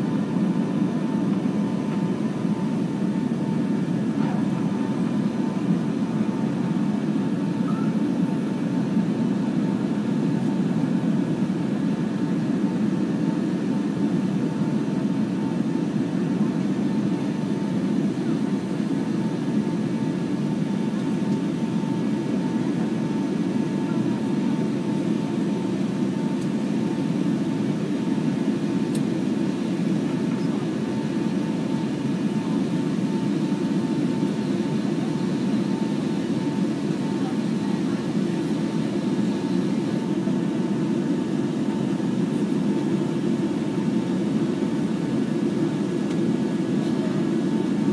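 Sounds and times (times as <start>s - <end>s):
jet engine roar in cabin: 0.0s - 47.9s.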